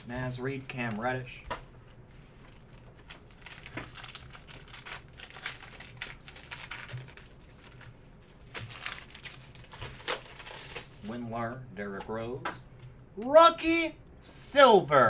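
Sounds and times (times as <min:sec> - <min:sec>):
card pack wrapper crinkling and tearing: 0:02.3 - 0:11.1.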